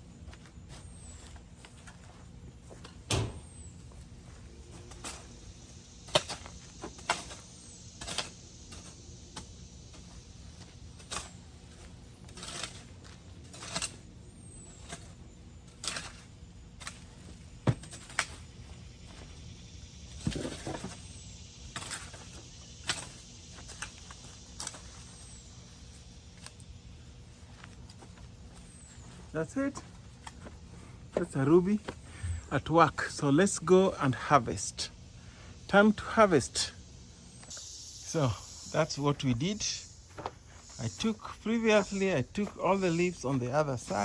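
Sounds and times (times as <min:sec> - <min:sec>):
garden tool knocking and scraping: 0:06.0 - 0:19.4, 0:20.0 - 0:25.2.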